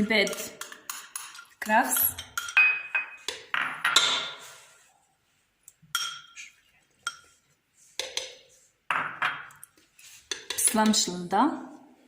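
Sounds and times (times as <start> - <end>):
dishes clinking against metal pot: 0.0 - 4.4, 5.9 - 6.4, 7.0 - 7.4.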